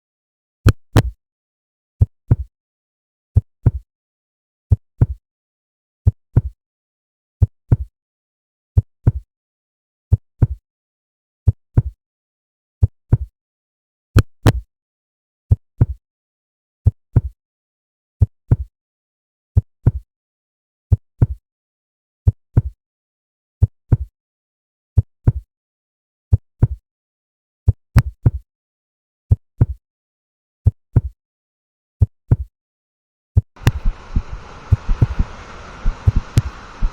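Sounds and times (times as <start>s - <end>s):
heartbeat thumps: 33.6s - 36.9s.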